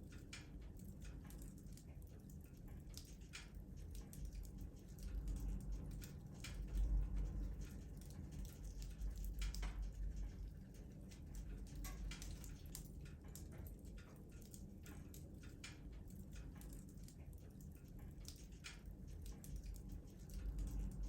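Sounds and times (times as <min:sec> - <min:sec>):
wood fire crackling and popping: 0:07.9 - 0:10.3, 0:11.1 - 0:21.0.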